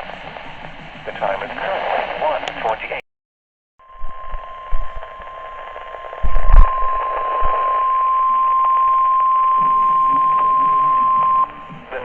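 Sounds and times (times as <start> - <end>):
radio static hiss: 0.0 - 3.0, 3.8 - 12.0
steady alarm tone: 3.8 - 12.0.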